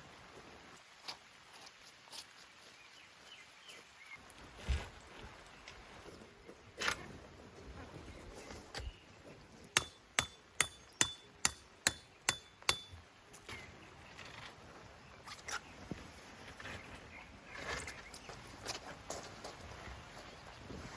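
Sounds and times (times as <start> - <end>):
sharp metallic strikes: 9.8 - 13.0.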